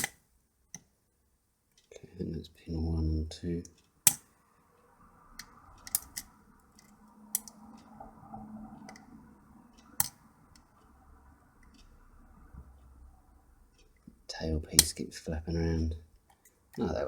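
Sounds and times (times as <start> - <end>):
sharp metallic clicks: 0.0 - 0.9, 3.6 - 4.6, 5.3 - 8.0, 9.8 - 10.9, 13.6 - 17.0
lock picking scraping: 5.8 - 6.3.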